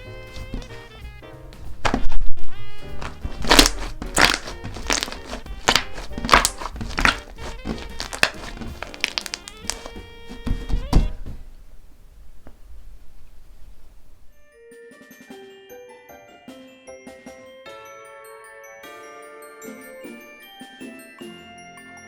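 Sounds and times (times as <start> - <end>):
dried clay cracking: 0.0 - 0.9, 1.6 - 2.2, 3.0 - 11.7
background music: 0.0 - 11.1, 14.4 - 22.0.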